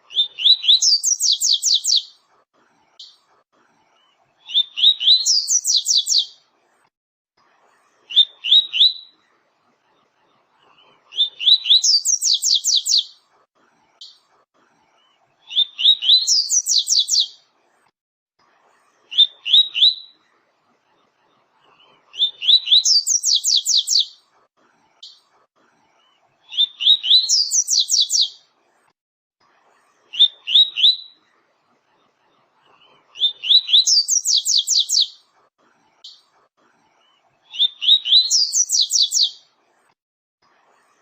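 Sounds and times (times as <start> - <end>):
songbird whistling song: 0.1 - 2.1, 4.4 - 6.4, 8.1 - 9.1, 11.2 - 13.2, 15.5 - 17.4, 19.1 - 20.2, 22.2 - 24.2, 26.5 - 28.4, 30.2 - 31.2, 33.2 - 35.2, 37.5 - 39.4.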